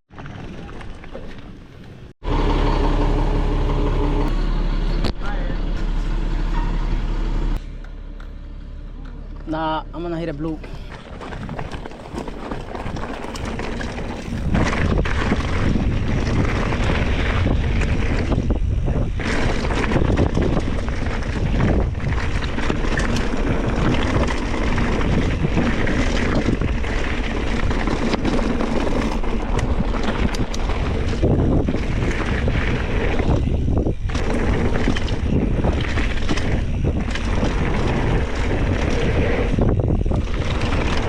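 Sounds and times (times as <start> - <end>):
bike rattling over bumps: 0.1 - 2.1, 10.3 - 41.0
wind rushing over microphone: 10.9 - 41.0.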